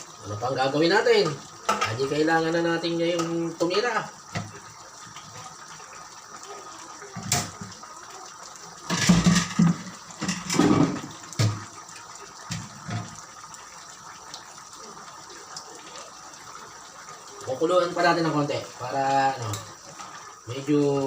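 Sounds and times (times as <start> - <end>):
pot simmering bubbling: 0.0 - 21.0
cookware knocking and clattering: 1.6 - 2.0, 8.9 - 11.7.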